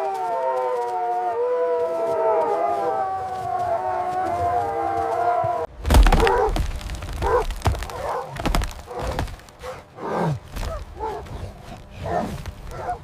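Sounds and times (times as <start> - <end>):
wolves howling: 0.0 - 6.6, 7.2 - 13.0
loud heavy thuds and knocks: 5.7 - 9.5.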